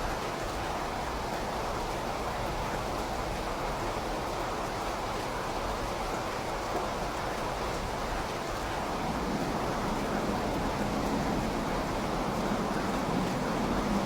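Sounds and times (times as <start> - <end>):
steady rain falling: 0.0 - 14.0.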